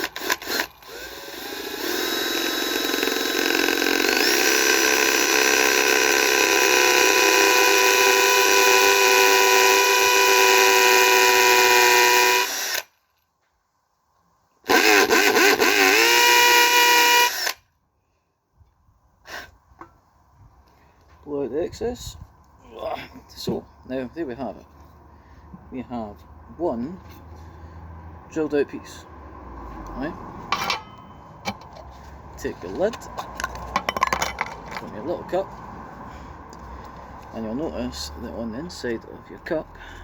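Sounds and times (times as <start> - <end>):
electric drill whining through metal: 0.0 - 12.9, 14.7 - 17.6.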